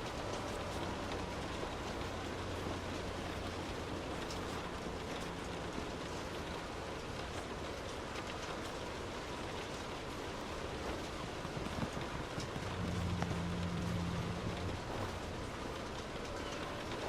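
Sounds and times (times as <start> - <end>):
rain pattering: 0.0 - 17.0
low hum: 10.9 - 16.5.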